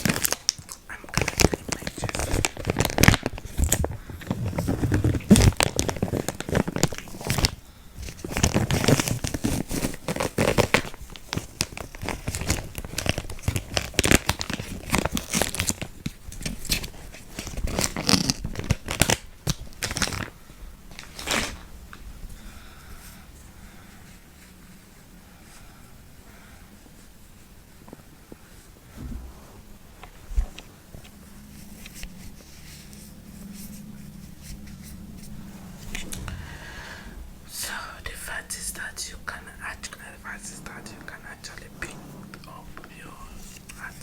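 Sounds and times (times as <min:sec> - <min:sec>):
doppler probe crackling on skin: 0:00.0 - 0:20.1.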